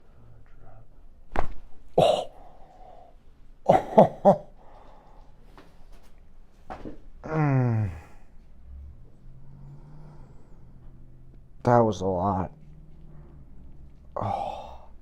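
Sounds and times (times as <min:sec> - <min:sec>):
person's short vocal reactions: 0:02.0 - 0:02.5, 0:03.7 - 0:04.5, 0:07.2 - 0:08.2, 0:14.2 - 0:14.9.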